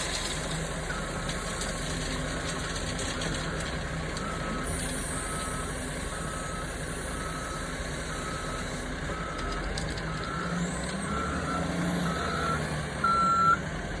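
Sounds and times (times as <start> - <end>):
diesel engine running: 0.0 - 14.0
backup alarm beeping: 11.2 - 13.6.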